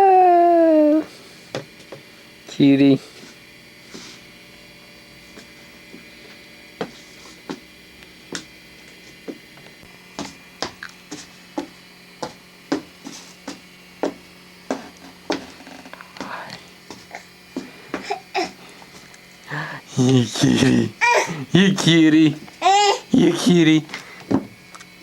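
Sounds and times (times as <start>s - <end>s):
steady electrical hum: 0.0s - 25.0s.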